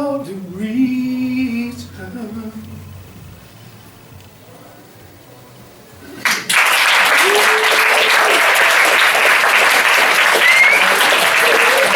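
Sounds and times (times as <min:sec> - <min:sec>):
audience applause: 0:06.2 - 0:11.9
crowd cheering: 0:06.2 - 0:11.9.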